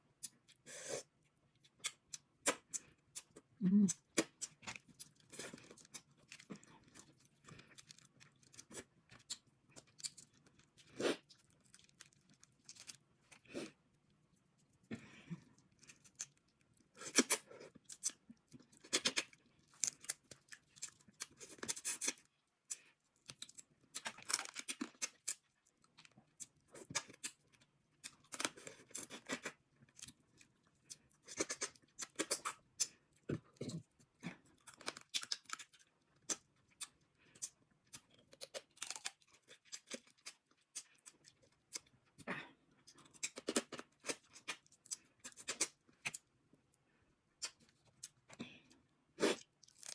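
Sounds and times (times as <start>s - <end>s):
chewing: 1.6s - 13.8s, 15.0s - 41.9s.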